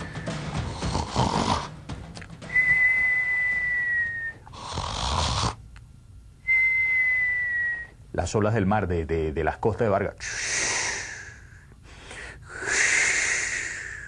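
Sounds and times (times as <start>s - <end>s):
man snoring with whistle: 0.0s - 1.7s, 2.7s - 5.6s.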